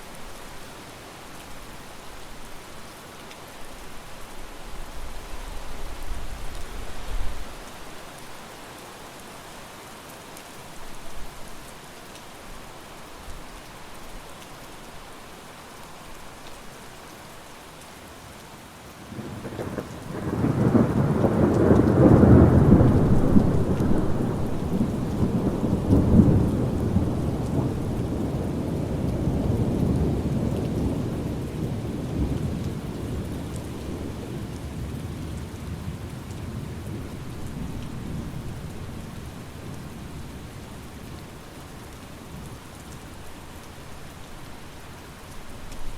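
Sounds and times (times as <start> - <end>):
steady rain: 0.0 - 45.9
thunder rolling: 19.3 - 27.9.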